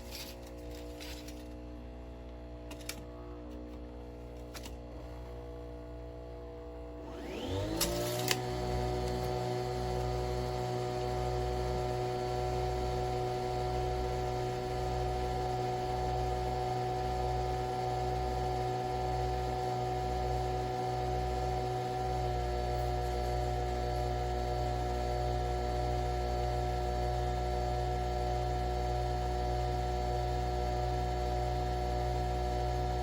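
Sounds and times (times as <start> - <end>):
coffee machine motor whine: 0.0 - 33.0.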